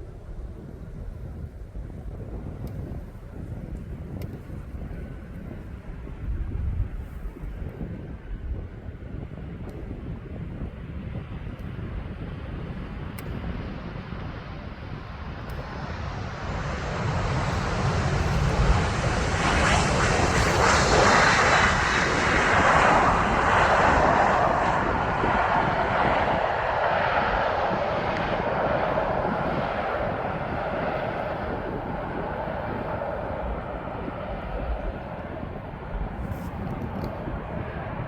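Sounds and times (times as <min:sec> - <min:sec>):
jet airliner flying past: 0:09.0 - 0:38.0.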